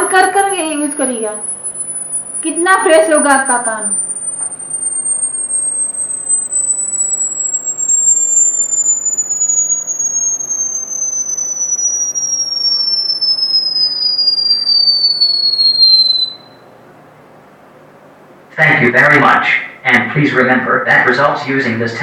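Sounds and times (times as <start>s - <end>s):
high tone gliding lower: 0.0s - 16.7s.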